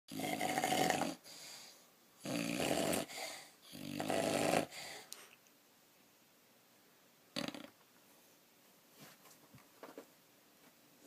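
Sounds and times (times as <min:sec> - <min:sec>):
loud buzzing snores: 0:00.1 - 0:01.3, 0:02.2 - 0:04.8, 0:07.4 - 0:07.7
soft breathing: 0:01.2 - 0:02.0, 0:03.0 - 0:03.7, 0:04.7 - 0:05.4.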